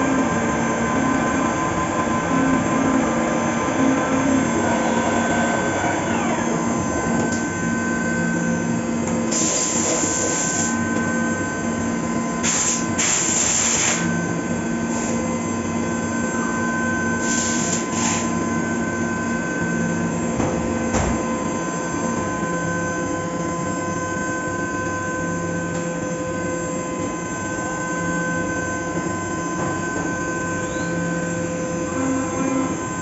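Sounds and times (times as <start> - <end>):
milling machine running: 0.0 - 20.9
hiss: 9.3 - 10.7, 12.4 - 14.1, 17.2 - 18.3.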